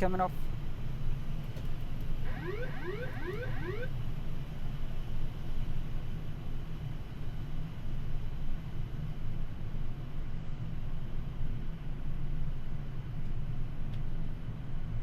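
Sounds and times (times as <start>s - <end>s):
cockpit hum and air noise: 0.0s - 15.0s
rising siren warning sweeps: 2.2s - 3.9s.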